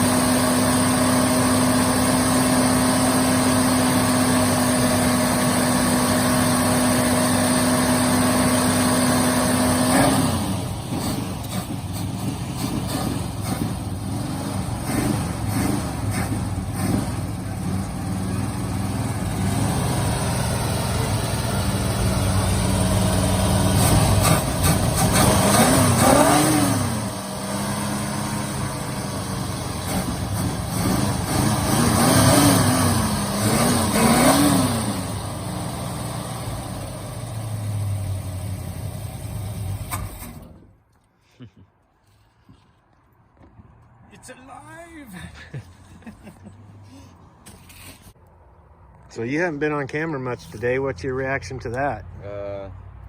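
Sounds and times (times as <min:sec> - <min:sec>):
car engine revving: 0:00.0 - 0:40.7.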